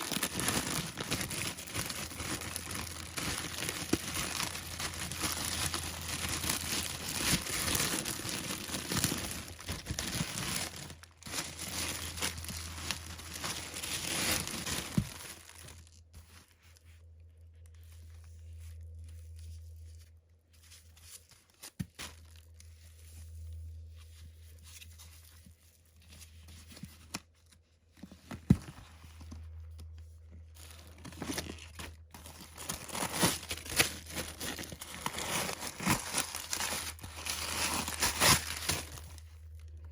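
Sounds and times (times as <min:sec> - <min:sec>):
packaging crinkling and tearing: 0:00.0 - 0:16.5, 0:30.4 - 0:39.9
low steady hum: 0:00.0 - 0:39.9.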